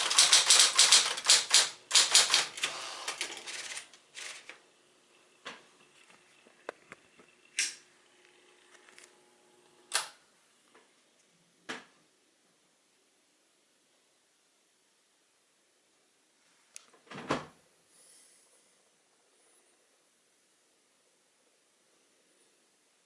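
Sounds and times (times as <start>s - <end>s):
manual typewriter key strikes: 0.0s - 2.7s.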